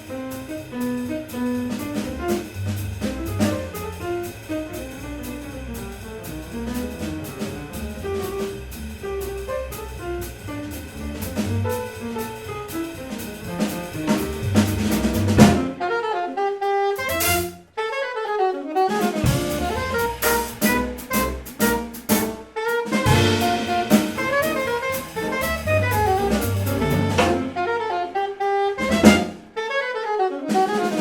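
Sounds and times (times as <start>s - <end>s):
jazz quartet playing: 0.0s - 31.0s
unaccompanied saxophone solo: 15.4s - 31.0s.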